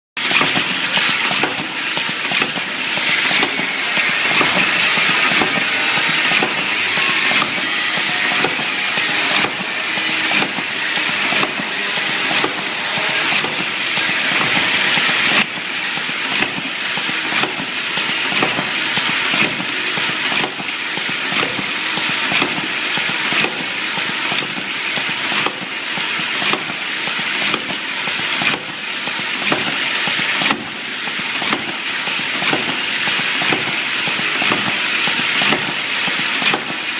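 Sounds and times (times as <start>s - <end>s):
irregular mechanical clicks and knocks: 0.2s - 36.8s
capping machine running: 0.2s - 36.9s.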